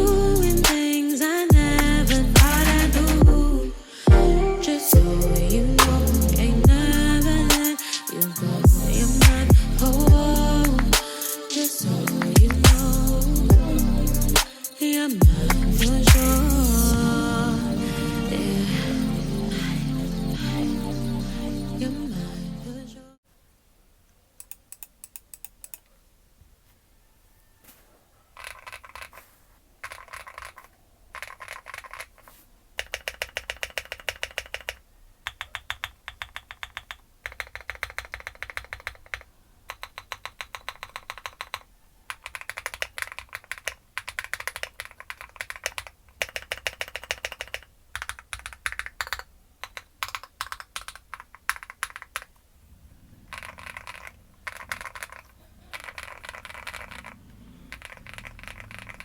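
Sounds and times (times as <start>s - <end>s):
mechanical keyboard typing: 28.4s - 29.2s, 29.8s - 52.4s, 53.2s - 59.0s.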